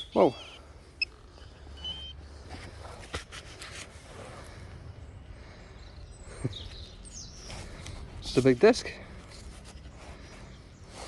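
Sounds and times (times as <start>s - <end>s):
handling clicks and rustles in soil: 0.9s - 4.7s, 6.6s - 11.0s.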